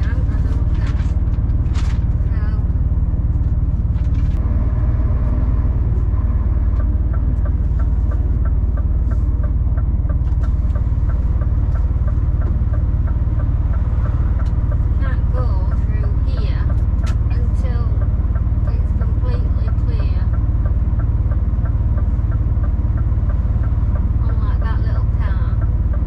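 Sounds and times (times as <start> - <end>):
diesel engine rumbling: 0.0 - 26.0
turn indicator ticking: 6.6 - 26.0.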